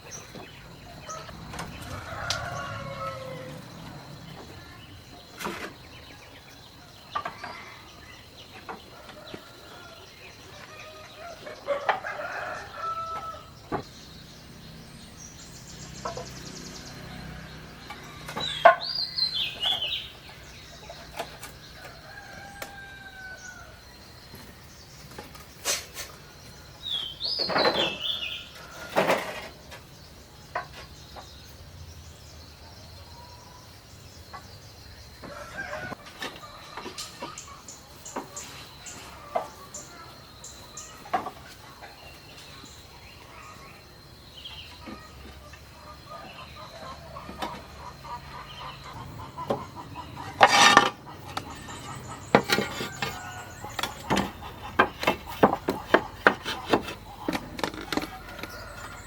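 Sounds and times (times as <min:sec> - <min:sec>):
chickens clucking: 0:00.0 - 0:13.9, 0:15.7 - 0:23.6, 0:34.3 - 0:59.0
rooster crowing: 0:00.8 - 0:04.2, 0:08.9 - 0:13.6, 0:21.8 - 0:23.8.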